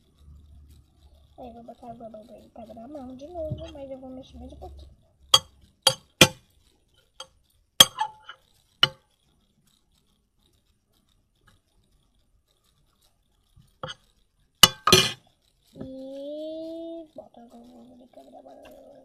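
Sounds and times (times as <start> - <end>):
spoon scrape: 5.3 - 6.4, 7.2 - 9.0, 13.8 - 14.0, 14.6 - 15.2.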